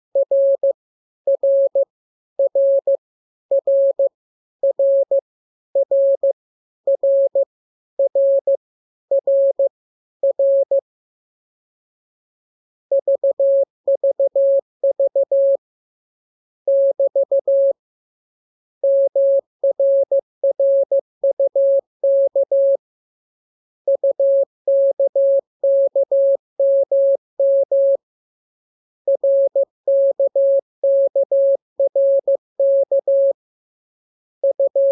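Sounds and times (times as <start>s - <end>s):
morse code tone: 34.4s - 34.9s.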